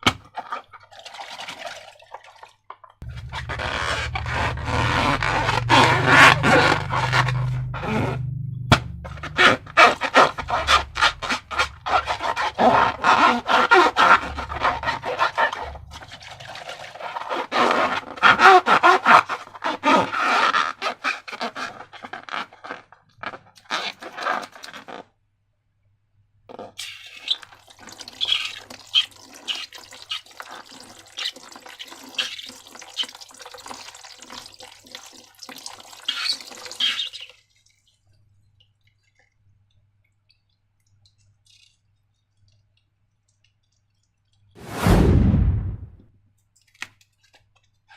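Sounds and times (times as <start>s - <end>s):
wet slime squelching: 3.0s - 18.2s.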